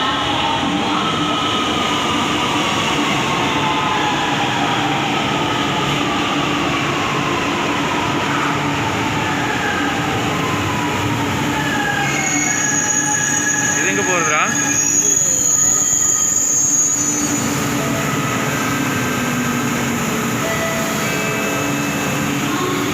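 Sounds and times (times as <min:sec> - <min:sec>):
high wheel squeal: 0:12.0 - 0:18.4.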